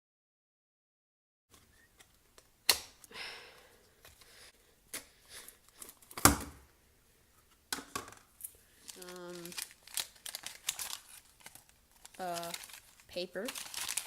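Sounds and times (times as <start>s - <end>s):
plastic items clacking: 7.7s - 14.0s
packaging rustle: 8.4s - 14.0s.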